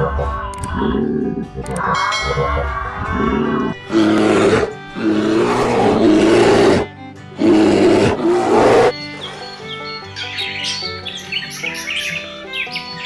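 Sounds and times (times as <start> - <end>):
tiger roaring: 0.0 - 8.9
background music: 0.0 - 13.0.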